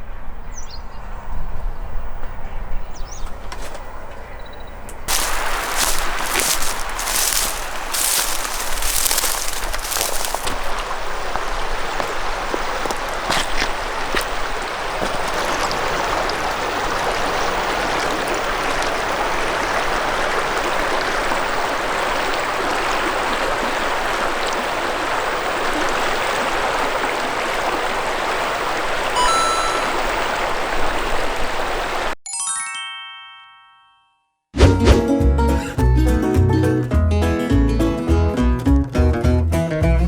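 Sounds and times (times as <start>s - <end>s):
river water rushing over rocks: 5.1s - 32.2s.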